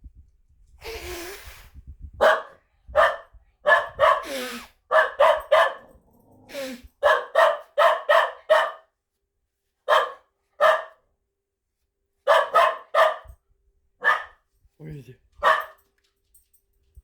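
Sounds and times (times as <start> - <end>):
person blowing their nose: 0.8 - 2.0, 4.2 - 4.8, 6.5 - 6.9
dog barking sharply: 2.2 - 5.9, 7.0 - 8.9, 9.9 - 11.0, 12.3 - 13.3, 14.0 - 14.4, 15.4 - 15.8.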